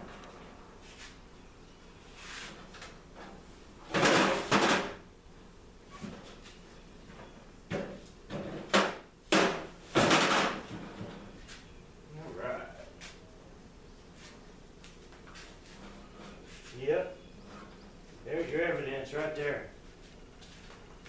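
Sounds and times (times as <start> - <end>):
sheet metal scraping and sliding: 15.6 - 16.7.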